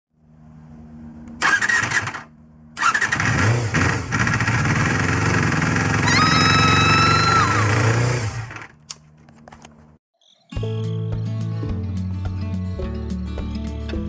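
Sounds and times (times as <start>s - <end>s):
motorcycle engine starting: 1.1s - 8.8s.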